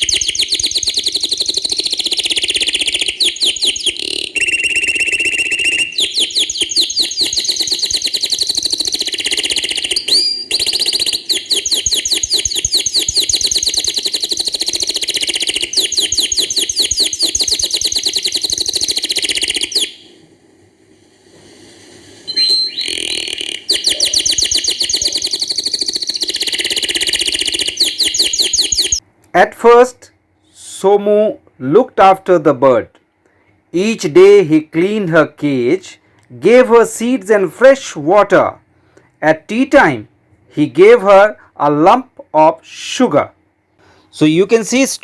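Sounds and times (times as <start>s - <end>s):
canary singing: 0.0s - 20.1s, 22.3s - 29.0s.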